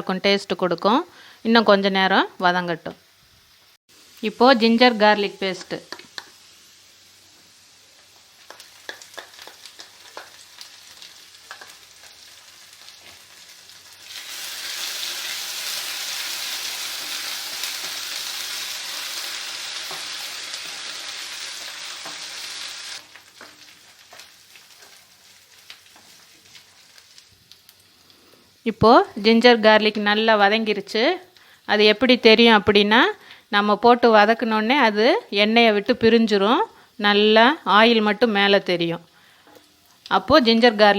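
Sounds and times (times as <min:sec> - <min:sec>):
loud frying sizzle: 0:02.8 - 0:40.9
spoon scraping and stirring pan: 0:23.2 - 0:27.1.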